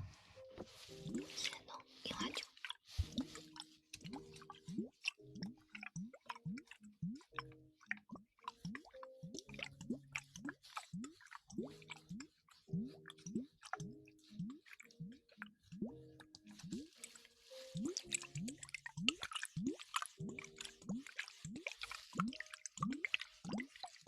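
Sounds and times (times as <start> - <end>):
wet squishing and crackling: 0.6 - 24.0
drip-like plops: 1.0 - 24.0.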